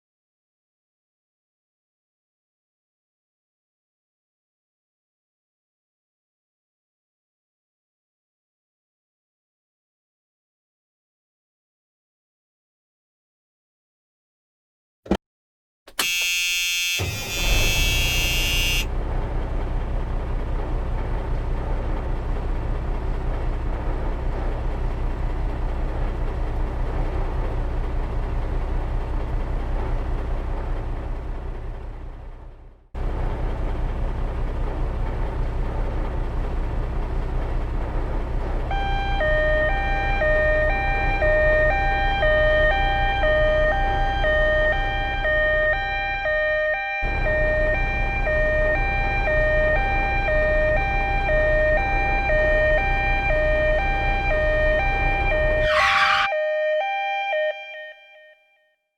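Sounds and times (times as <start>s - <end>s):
two-tone emergency siren: 16.0s - 18.9s, 38.7s - 58.8s
vehicle engine rumbling: 17.0s - 56.8s
brief bright tone: 57.4s - 58.7s.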